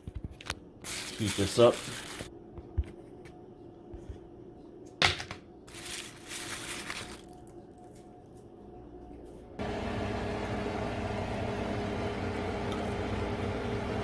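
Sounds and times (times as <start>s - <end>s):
rustling: 0.8s - 2.3s, 5.7s - 7.5s.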